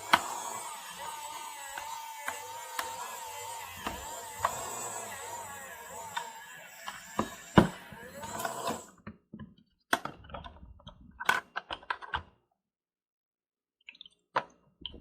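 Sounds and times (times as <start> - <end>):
toy washing machine whirring: 0.0 - 9.0
small plastic clicks and knocks: 6.1 - 12.4, 13.9 - 15.0.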